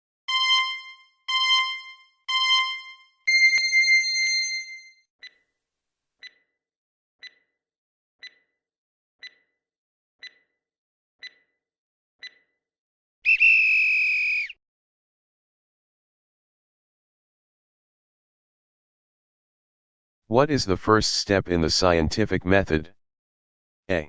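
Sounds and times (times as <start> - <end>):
electronic countdown beeps: 0.3 - 5.4, 6.2 - 6.5, 7.2 - 7.5, 8.2 - 8.6, 9.2 - 9.6, 10.2 - 10.5, 11.2 - 11.6, 12.2 - 12.6
clock ticking: 6.2 - 6.4, 7.2 - 7.5, 8.2 - 8.5, 9.2 - 9.5, 10.2 - 10.5, 11.2 - 11.5, 12.2 - 12.4.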